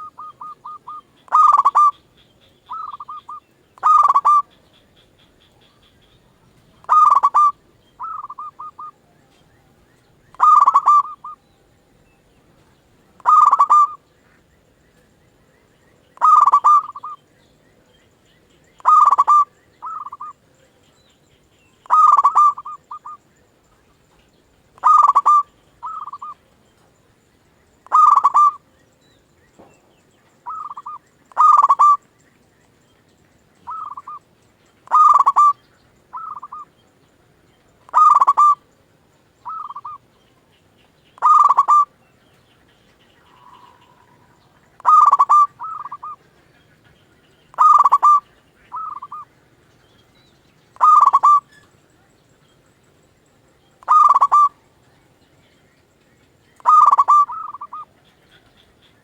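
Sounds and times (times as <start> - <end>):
dove cooing: 0.0 - 11.5, 12.5 - 14.1, 16.2 - 17.2, 18.8 - 20.4, 21.8 - 23.2, 24.8 - 26.5, 27.8 - 28.7, 30.4 - 32.0, 33.6 - 34.2, 34.8 - 36.7, 37.9 - 38.7, 39.4 - 40.1, 41.2 - 42.0, 42.7 - 49.4, 50.8 - 51.7, 53.8 - 54.8, 56.6 - 59.0.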